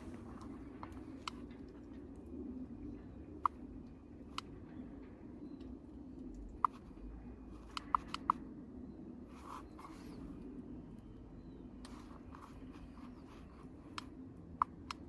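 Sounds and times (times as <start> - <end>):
low steady hum: 0.0 - 15.0
sharp clicks and light knocks: 7.7 - 8.4.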